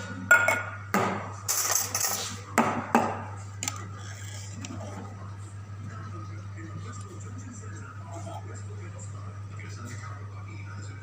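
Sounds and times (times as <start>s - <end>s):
steady low hum: 0.0s - 11.0s
cups and cutlery clinking: 0.3s - 0.8s, 1.5s - 5.0s.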